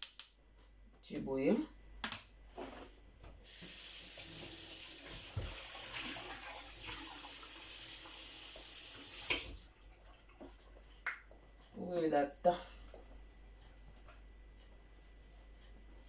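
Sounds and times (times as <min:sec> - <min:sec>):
water running: 0:03.4 - 0:10.6.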